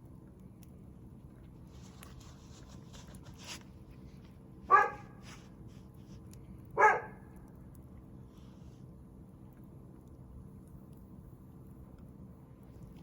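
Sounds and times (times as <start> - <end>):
faint wood fire crackle: 0.0 - 13.0
dog barking: 4.7 - 5.2, 6.8 - 7.3.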